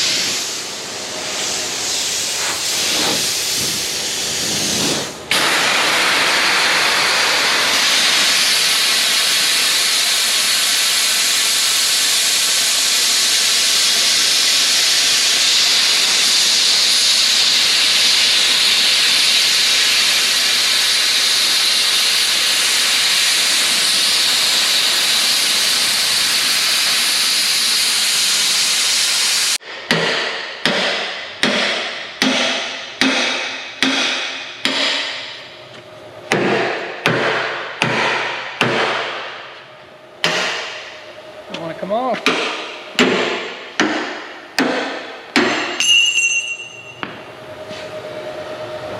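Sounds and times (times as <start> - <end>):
plasma cutter hissing: 0.0 - 29.6.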